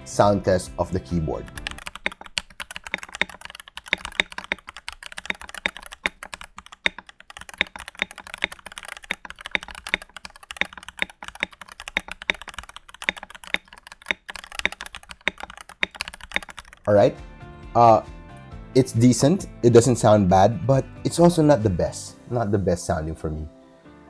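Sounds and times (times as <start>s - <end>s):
mechanical keyboard typing: 0.9s - 17.0s.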